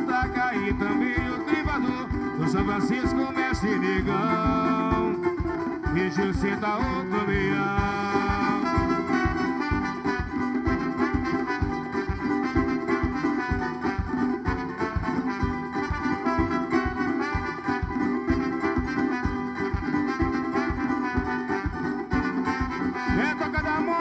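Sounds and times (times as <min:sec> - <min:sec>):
drums fast steady beat: 0:00.0 - 0:24.0
sustained melody instruments: 0:00.0 - 0:24.0.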